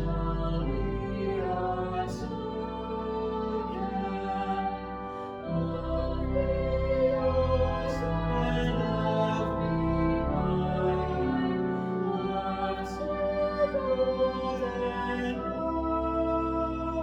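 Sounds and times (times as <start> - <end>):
hymn singing: 0.0 - 17.0.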